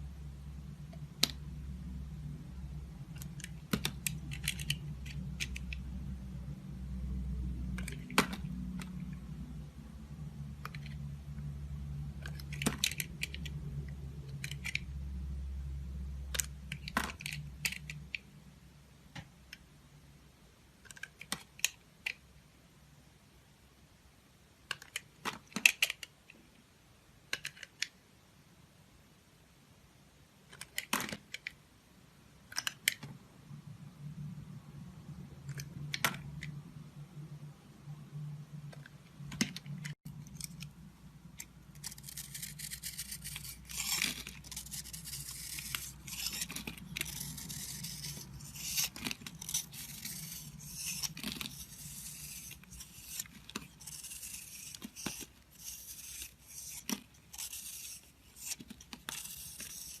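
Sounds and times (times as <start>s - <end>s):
faint low hum: 0.0s - 25.2s
blade scraping soap: 41.8s - 60.0s.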